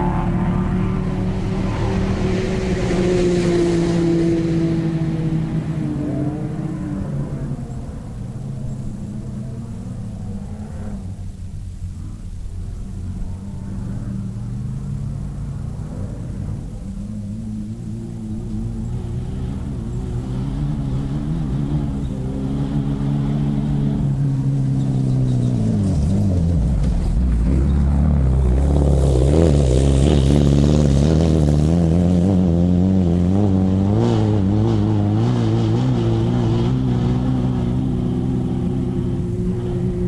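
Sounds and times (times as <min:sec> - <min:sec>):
buggy engine revving: 0:00.0 - 0:40.0.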